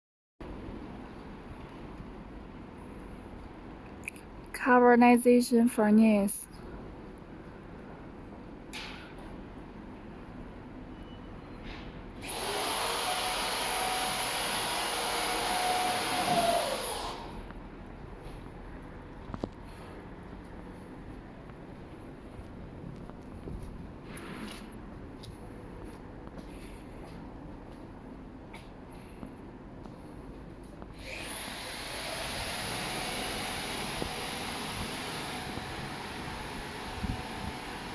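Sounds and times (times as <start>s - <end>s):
machine whining and whirring: 11.0s - 17.6s, 30.8s - 37.9s.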